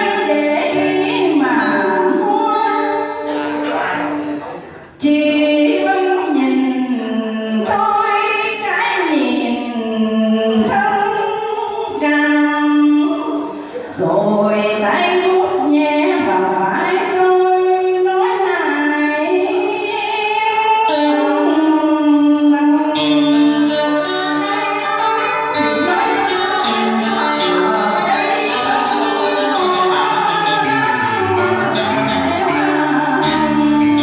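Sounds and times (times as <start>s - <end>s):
instrumental accompaniment: 0.0s - 4.7s, 20.8s - 34.0s
person singing: 0.0s - 24.0s, 24.9s - 34.0s.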